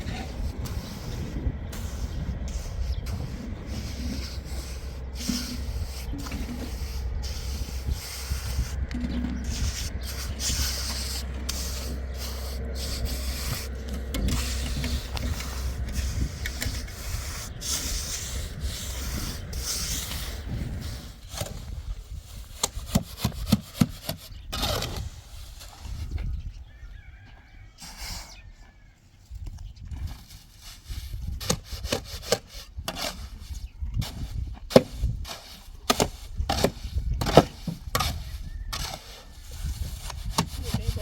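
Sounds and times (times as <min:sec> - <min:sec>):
steady low hum: 0:00.0 - 0:22.1
tools scraping on concrete: 0:00.0 - 0:26.2, 0:30.0 - 0:41.0.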